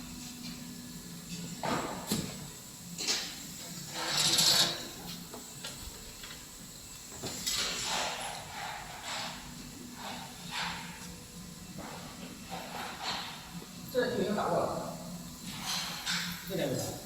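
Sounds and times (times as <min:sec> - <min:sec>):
hard parts scraping and sliding: 0:03.9 - 0:04.9.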